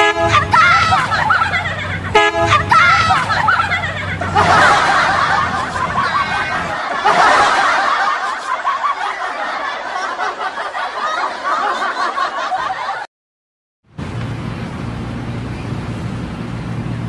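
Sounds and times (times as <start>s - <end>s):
vehicle engine humming: 0.0s - 7.0s, 13.9s - 17.0s
people laughing: 0.2s - 13.1s
noisy chatter: 2.9s - 7.0s.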